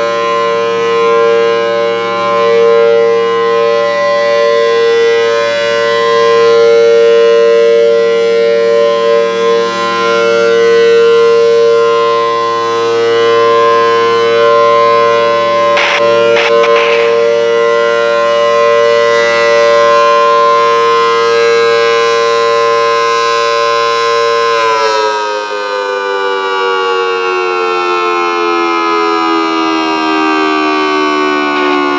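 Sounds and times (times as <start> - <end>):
tornado siren held chord: 0.0 - 31.9
brief noises: 15.8 - 17.2.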